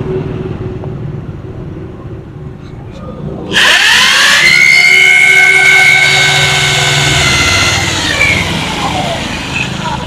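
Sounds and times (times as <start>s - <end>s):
electric drill whining: 3.6s - 9.8s.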